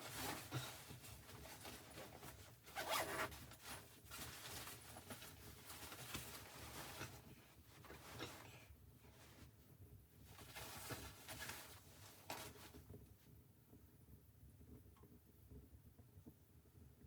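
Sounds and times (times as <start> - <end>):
rustling and scraping handling noises: 0.0 - 9.6, 10.2 - 13.0.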